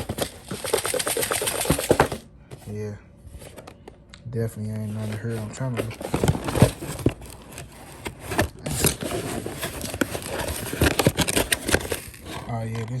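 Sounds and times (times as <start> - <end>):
cardboard box rummaged by hand: 0.0 - 2.2, 5.0 - 12.5.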